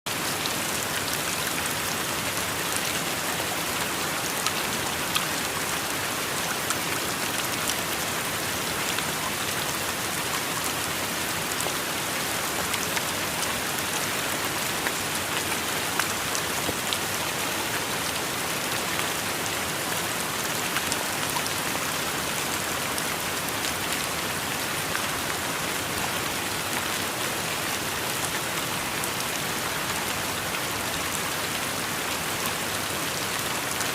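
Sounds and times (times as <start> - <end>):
heavy rain falling: 0.1 - 33.9
raindrops ticking on surfaces: 8.6 - 31.7.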